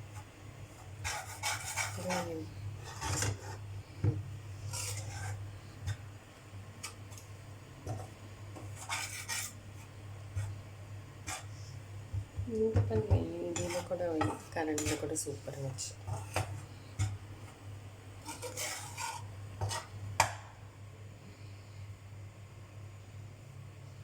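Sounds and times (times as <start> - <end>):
low steady hum: 0.0 - 24.0
metal ladle scraping a pan: 0.9 - 3.6, 4.6 - 5.4, 8.6 - 9.6, 13.6 - 17.2, 18.2 - 20.0.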